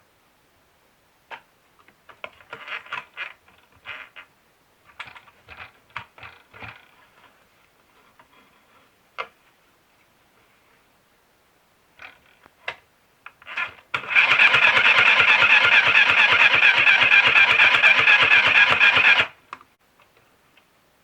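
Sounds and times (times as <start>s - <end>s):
toy sewing machine clicking: 13.6s - 19.4s.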